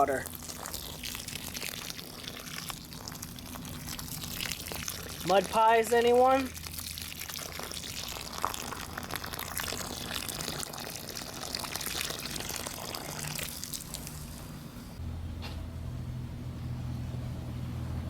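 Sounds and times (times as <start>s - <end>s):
water pouring into a hole: 0.0s - 14.4s
low hum: 14.0s - 18.0s.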